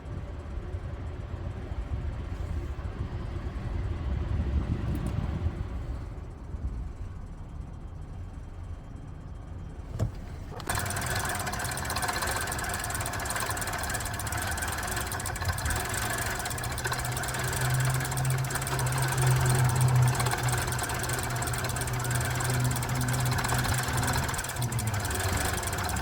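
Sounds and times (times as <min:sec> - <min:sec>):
car engine cranking: 0:09.9 - 0:26.0
starter click: 0:09.9 - 0:26.0.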